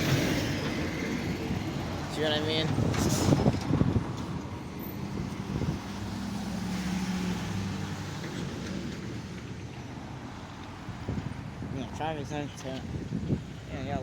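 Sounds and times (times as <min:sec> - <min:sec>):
vehicle passing: 0:00.0 - 0:11.4
wind on microphone: 0:02.7 - 0:04.4, 0:05.0 - 0:06.1, 0:10.9 - 0:11.8, 0:12.8 - 0:14.0.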